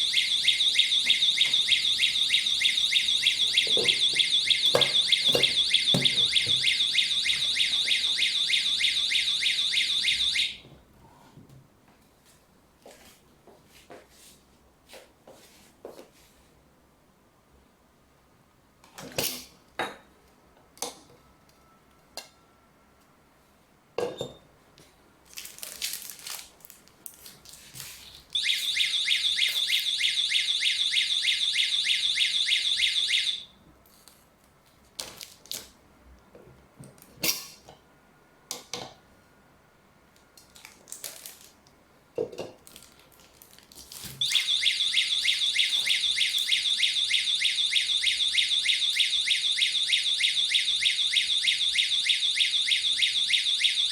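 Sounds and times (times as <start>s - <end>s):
pulsing electronic alarm tone: 0.0s - 10.6s, 28.4s - 33.5s, 44.2s - 53.9s.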